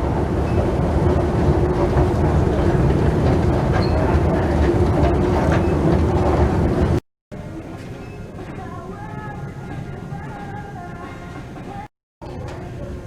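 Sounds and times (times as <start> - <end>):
loud steady rumbling: 0.0 - 7.5.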